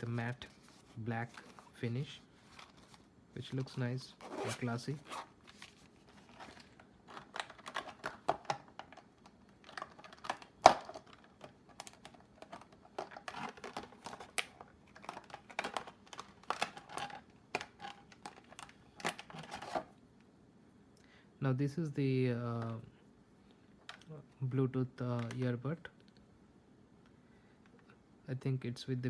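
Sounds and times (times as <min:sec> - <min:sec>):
packaging crinkling: 0:00.0 - 0:19.9.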